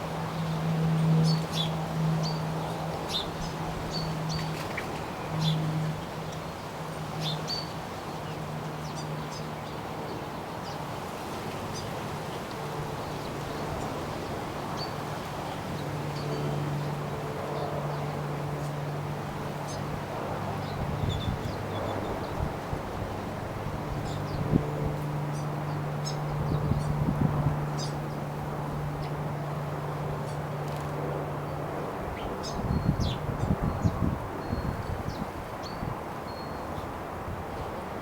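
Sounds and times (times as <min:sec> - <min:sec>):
wind noise: 0:20.0 - 0:25.3, 0:26.2 - 0:27.8, 0:32.0 - 0:38.0.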